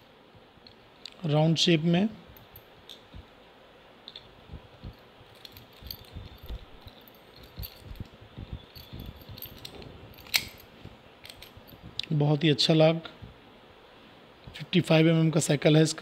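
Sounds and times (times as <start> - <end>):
padlock and keys clicking: 4.1 - 11.8
sharp padlock click: 10.2 - 10.6.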